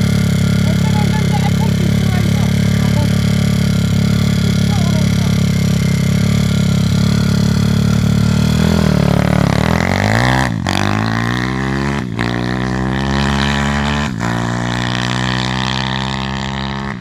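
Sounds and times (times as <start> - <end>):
motorbike engine revving: 0.0 - 17.0.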